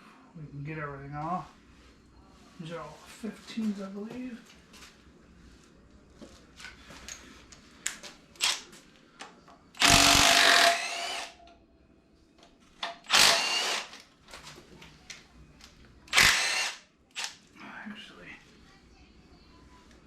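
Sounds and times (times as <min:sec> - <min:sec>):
power tool spinning bolts: 0:09.8 - 0:11.3, 0:13.0 - 0:14.0, 0:16.1 - 0:17.3.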